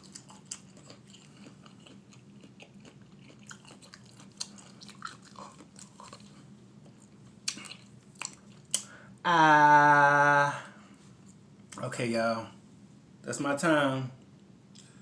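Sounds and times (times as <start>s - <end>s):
man chewing and crunching: 0.0s - 8.9s.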